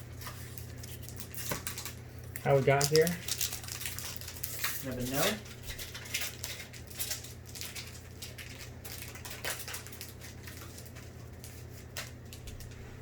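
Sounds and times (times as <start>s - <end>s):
low steady hum: 0.0s - 13.0s
trading cards rustling and clicking: 0.2s - 12.8s.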